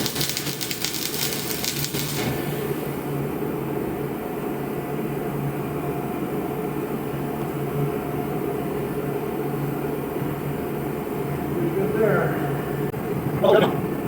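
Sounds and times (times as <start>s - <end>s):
arc welder crackling sizzle: 0.0s - 3.2s
electrical hum: 0.0s - 14.0s.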